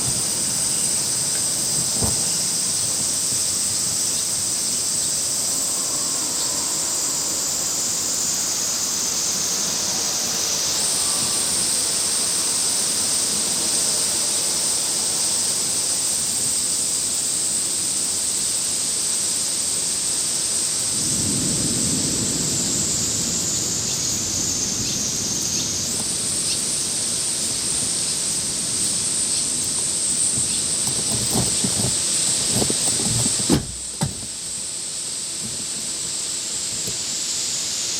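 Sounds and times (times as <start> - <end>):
thunder rumble: 0.0 - 9.9, 20.8 - 27.9, 28.6 - 34.7
rain hiss: 0.0 - 37.9.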